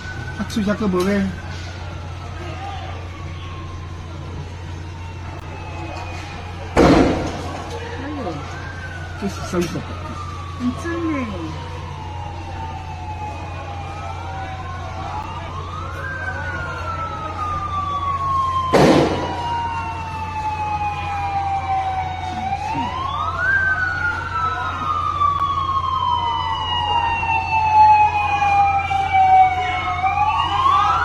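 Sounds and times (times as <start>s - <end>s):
emergency sirens wailing: 0.0s - 31.0s
sharp bang: 18.7s - 19.4s.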